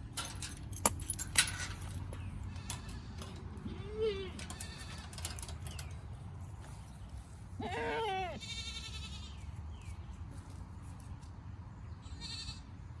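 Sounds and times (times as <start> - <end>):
birds singing: 1.6 - 13.0
goat bleating: 2.5 - 5.1, 7.6 - 9.4, 12.0 - 12.7.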